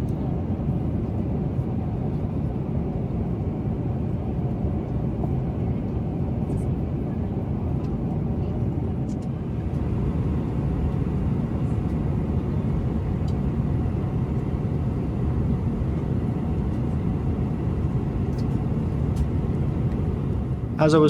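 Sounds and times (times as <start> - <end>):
airplane cabin rumble: 0.0 - 21.0.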